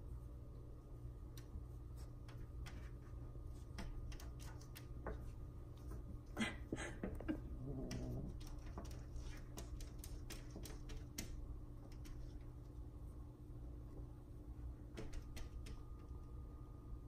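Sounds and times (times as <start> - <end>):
cats scratching at window glass: 1.4 - 6.0, 7.8 - 12.7, 14.9 - 16.0.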